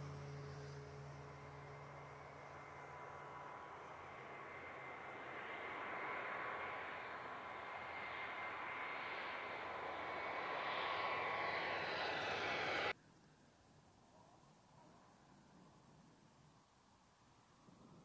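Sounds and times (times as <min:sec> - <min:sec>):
airliner engines passing: 0:00.0 - 0:13.0.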